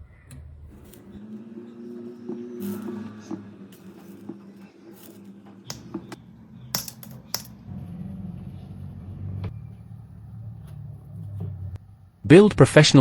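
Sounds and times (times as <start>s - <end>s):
low steady drone: 0.0s - 12.6s
sharp clicks of small hard objects: 5.0s - 7.6s.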